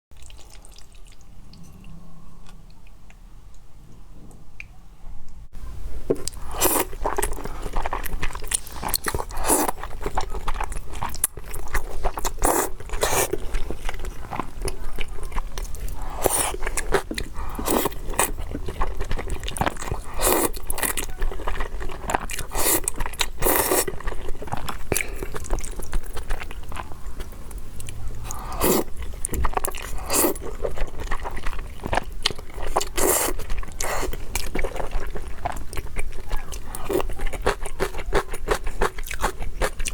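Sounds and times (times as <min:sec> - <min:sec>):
person chewing noodles: 0:00.2 - 0:01.7, 0:06.2 - 0:39.9.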